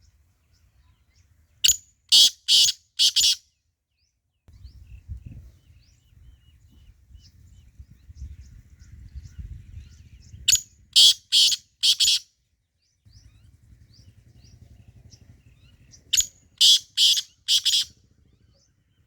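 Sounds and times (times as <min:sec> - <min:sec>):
francolin calling: 0:01.6 - 0:03.4, 0:11.0 - 0:12.2, 0:16.2 - 0:17.9.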